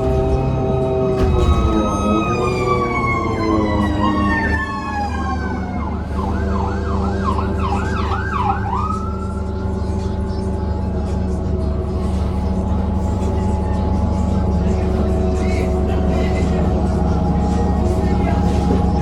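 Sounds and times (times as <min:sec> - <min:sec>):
electric bus drive whining: 0:00.0 - 0:19.0
steady low drone: 0:00.0 - 0:19.0
siren warbling: 0:00.3 - 0:09.6.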